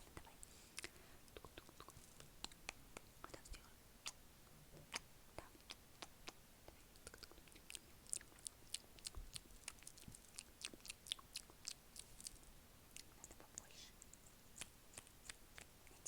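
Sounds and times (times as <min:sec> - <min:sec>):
wet lip and tongue clicks: 0:00.2 - 0:04.2, 0:04.8 - 0:16.0.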